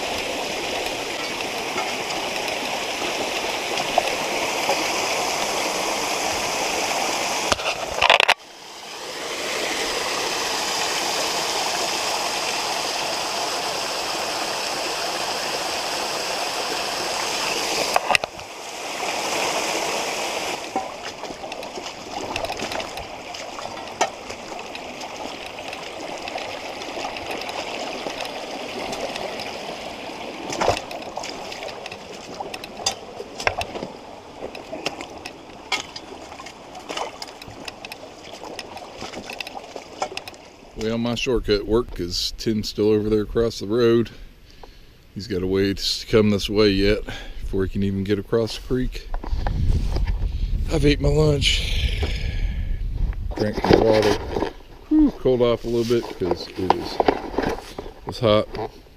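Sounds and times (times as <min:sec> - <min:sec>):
water rushing over rocks: 0:00.0 - 0:42.0.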